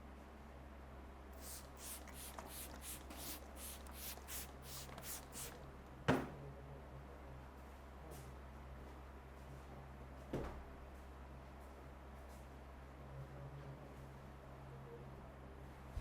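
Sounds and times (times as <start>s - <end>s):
hands rubbing over hair: 1.4s - 5.6s.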